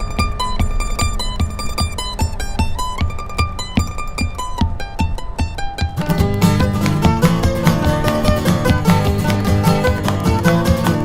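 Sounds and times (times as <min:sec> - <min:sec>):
upbeat folk music: 0:00.0 - 0:11.0.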